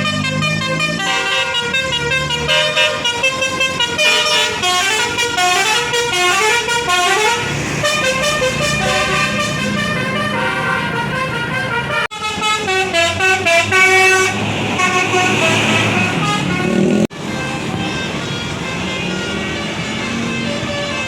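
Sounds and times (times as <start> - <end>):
melodic bus horn: 0.0 - 21.0.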